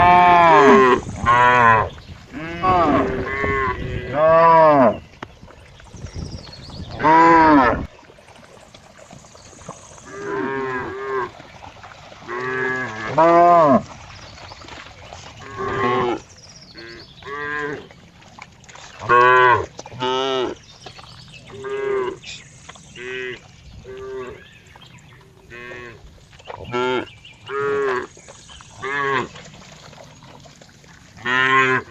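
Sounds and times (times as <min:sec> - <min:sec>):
cow mooing: 0:00.0 - 0:05.0.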